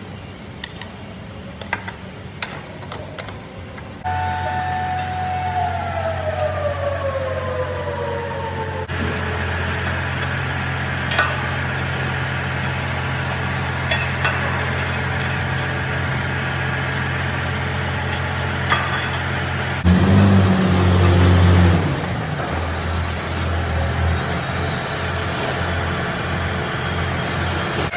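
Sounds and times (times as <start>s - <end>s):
engine humming: 3.7s - 27.9s
high whistle: 4.1s - 6.7s.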